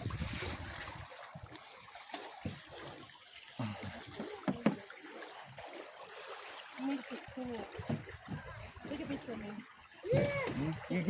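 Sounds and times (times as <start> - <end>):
river water lapping: 0.0 - 11.0.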